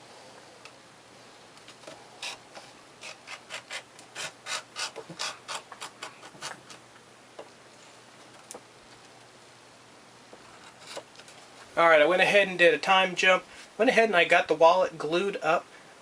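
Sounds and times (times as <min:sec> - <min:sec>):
hand tool scraping leather: 0:01.8 - 0:06.8, 0:10.5 - 0:11.1.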